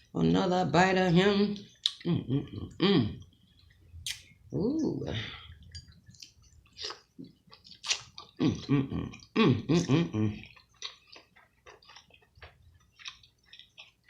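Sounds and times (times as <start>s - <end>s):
wet chewing and lip smacking: 1.5s - 4.4s, 5.5s - 14.0s
person humming mmm: 8.4s - 10.4s.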